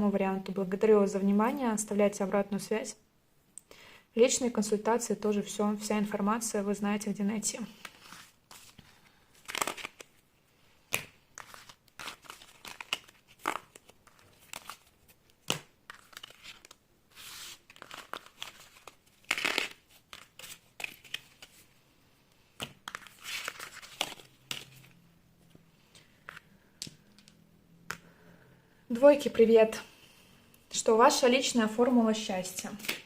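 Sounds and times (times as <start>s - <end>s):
cards swishing and snapping: 7.8s - 10.2s, 10.8s - 21.7s, 22.5s - 25.0s.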